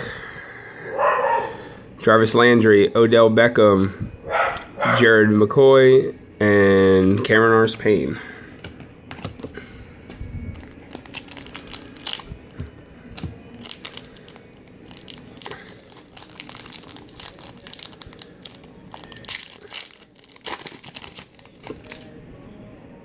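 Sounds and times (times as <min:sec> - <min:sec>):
foil pack tearing and crinkling: 0:10.5 - 0:22.2.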